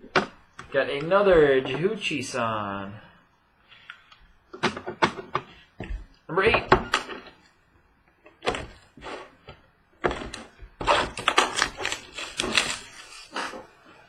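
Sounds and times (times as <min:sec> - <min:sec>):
wrapper crinkling and tearing: 0:11.1 - 0:13.5.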